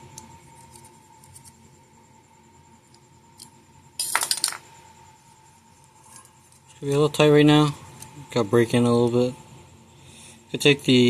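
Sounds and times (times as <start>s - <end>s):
metal parts clinking and rattling: 4.0s - 4.7s.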